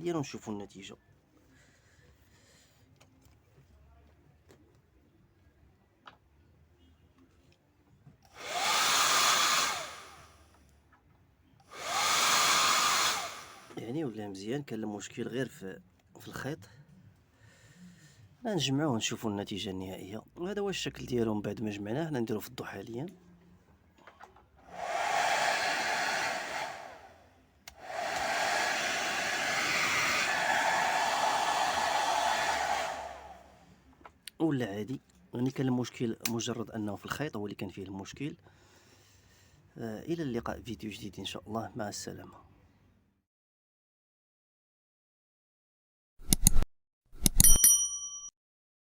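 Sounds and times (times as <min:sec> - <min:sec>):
hair dryer whirring: 0:08.3 - 0:10.4, 0:11.7 - 0:13.8, 0:24.7 - 0:33.6
rush of blown air: 0:08.4 - 0:10.3, 0:11.7 - 0:13.8, 0:24.7 - 0:27.2, 0:27.8 - 0:33.6
hair dryer switch click: 0:27.7 - 0:29.0.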